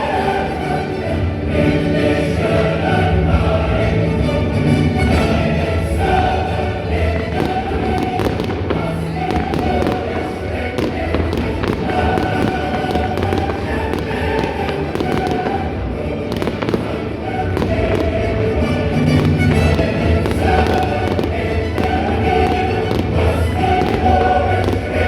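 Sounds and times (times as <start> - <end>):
loud music with choir: 0.0 - 25.0
fireworks bursting and crackling: 5.2 - 25.0.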